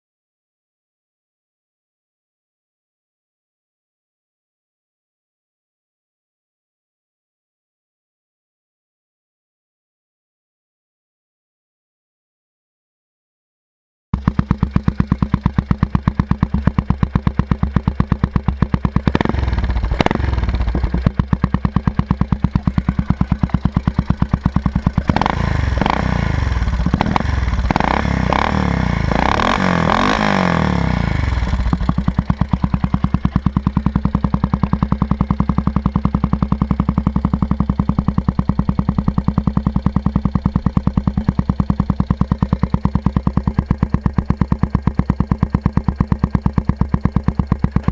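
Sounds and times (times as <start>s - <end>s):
motorcycle engine idling and revving: 14.2s - 47.9s.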